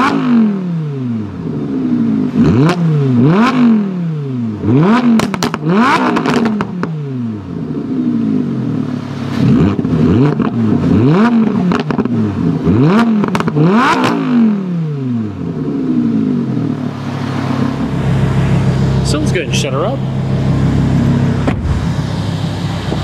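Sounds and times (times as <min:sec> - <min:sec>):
car engine revving: 0:00.0 - 0:23.0
exhaust cracks: 0:04.6 - 0:07.0, 0:09.3 - 0:14.3, 0:16.5 - 0:23.0.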